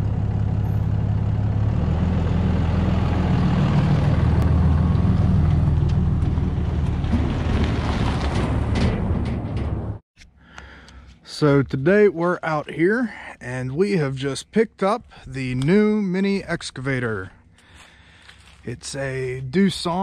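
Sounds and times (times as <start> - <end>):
heavy engine humming: 0.0 - 10.0.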